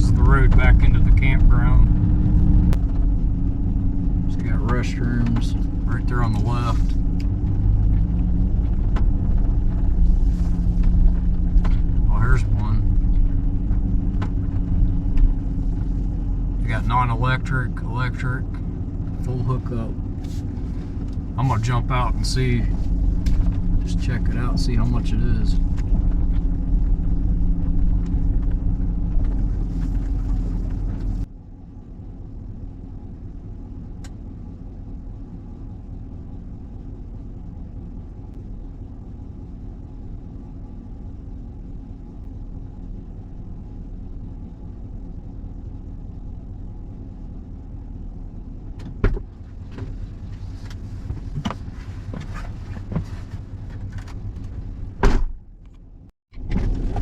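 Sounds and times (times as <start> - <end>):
vehicle engine idling: 0.0 - 57.0
loud thump: 55.0 - 55.4.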